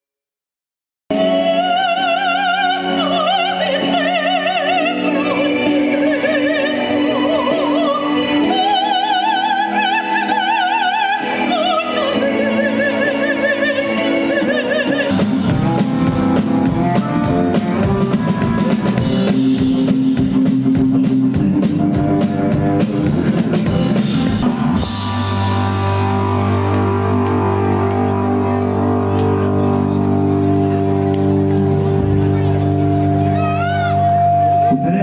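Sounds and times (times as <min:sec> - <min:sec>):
person singing with vibrato: 0:01.1 - 0:20.1
full band with drum beat: 0:15.0 - 0:34.8.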